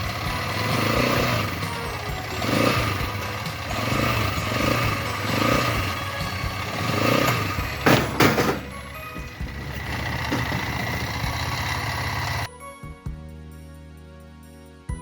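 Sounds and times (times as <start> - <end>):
quad bike engine running: 0.0 - 12.5
sharp knocks or rattles: 2.9 - 12.5.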